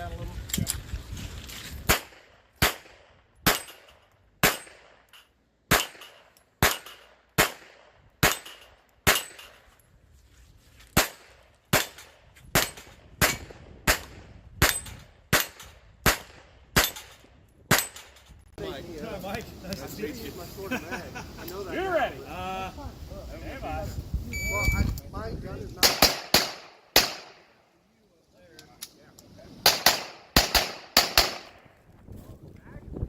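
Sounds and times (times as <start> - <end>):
pistol shots with echo: 5.7 - 9.4, 25.8 - 27.6, 29.6 - 31.6.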